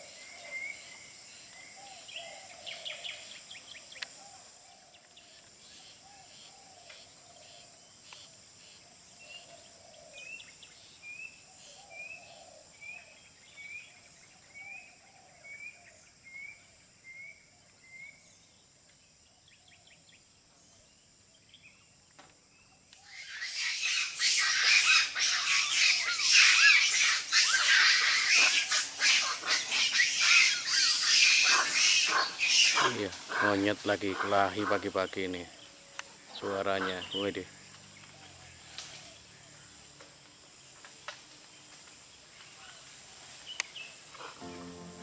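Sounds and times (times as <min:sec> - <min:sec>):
insects droning: 0:00.0 - 0:45.0
monkeys calling loudly: 0:23.0 - 0:35.4, 0:36.3 - 0:37.4
bird calling: 0:23.0 - 0:37.4.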